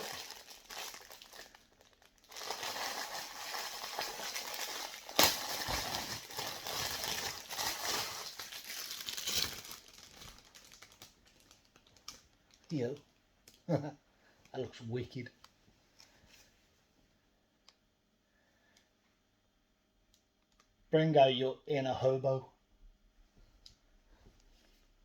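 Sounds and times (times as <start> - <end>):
packaging crinkling and rustling: 0.0 - 13.6.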